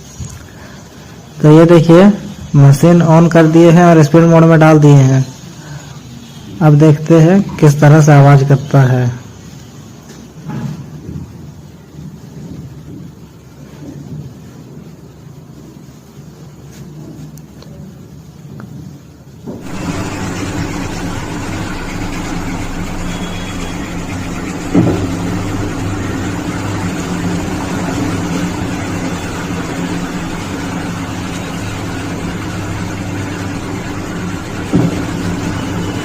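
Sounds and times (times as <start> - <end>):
washing machine spin cycle: 0.0 - 36.0
drum knocking against cabinet: 34.7 - 35.1.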